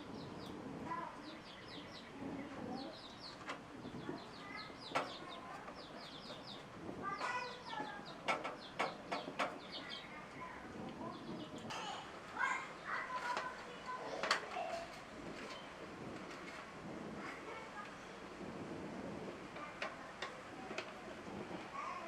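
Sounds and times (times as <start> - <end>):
birds chirping: 0.0 - 22.0
sharp clicks and knocks: 4.9 - 6.5, 7.2 - 9.9.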